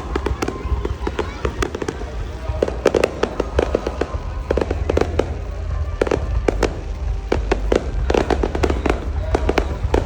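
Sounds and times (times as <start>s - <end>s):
fireworks bangs and crackles: 0.0s - 10.0s
low rumble: 3.4s - 10.0s.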